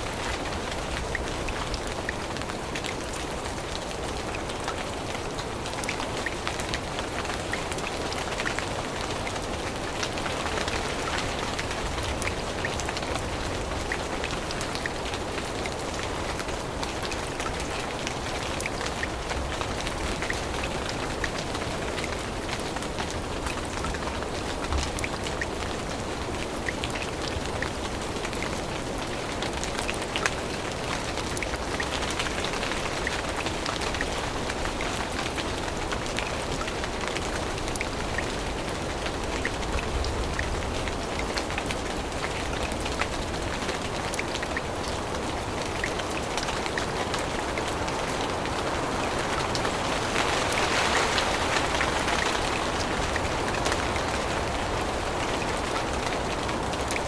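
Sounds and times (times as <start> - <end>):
rain falling on leaves: 0.0 - 57.0.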